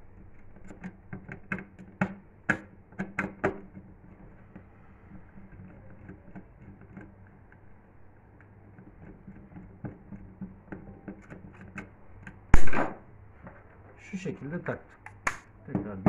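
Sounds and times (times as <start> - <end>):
faint clicks and taps: 0.3 - 12.5
sharp loud knock: 12.6 - 13.0.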